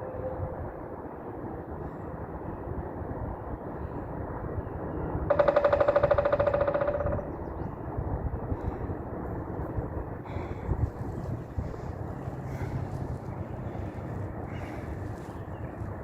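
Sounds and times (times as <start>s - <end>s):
woodpecker drumming: 5.3s - 7.5s.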